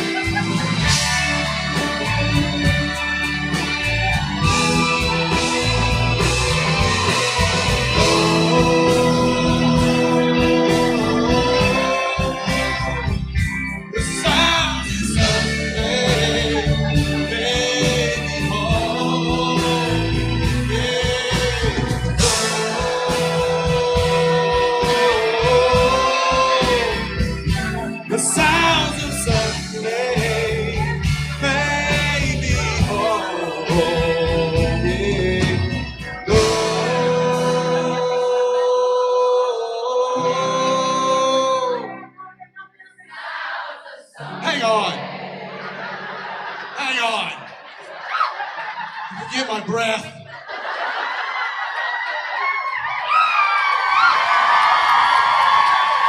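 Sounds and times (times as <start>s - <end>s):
band music with guitar: 0.0s - 42.4s, 44.2s - 47.6s
person singing: 0.0s - 43.1s.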